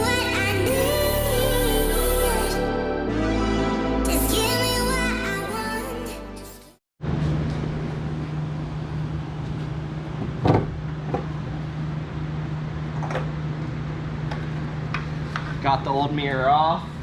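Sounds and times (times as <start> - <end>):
steady mechanical hum: 7.0 - 17.0.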